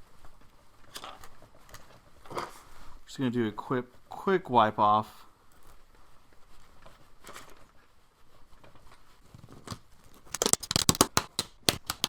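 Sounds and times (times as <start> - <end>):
sharp clicks and scrapes: 9.4 - 12.0.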